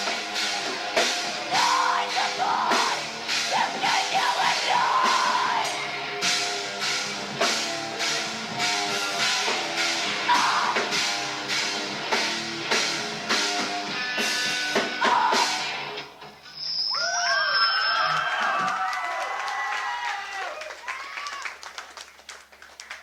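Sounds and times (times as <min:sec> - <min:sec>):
rock band playing live: 0:00.0 - 0:16.2.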